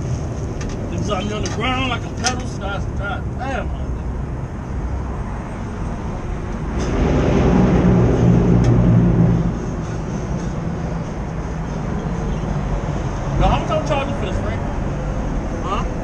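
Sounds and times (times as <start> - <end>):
steady low rumble: 2.8 - 16.0
motor vehicle passing by: 4.5 - 16.0.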